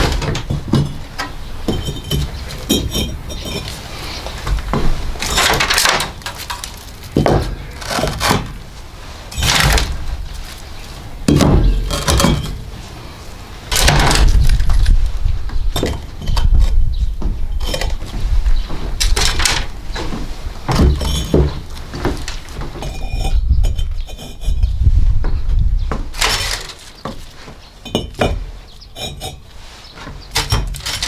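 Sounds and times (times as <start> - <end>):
hard pieces knocking and clinking: 1.7 - 3.8, 11.3 - 12.6, 27.8 - 28.4
wind buffeting microphone: 13.3 - 26.2.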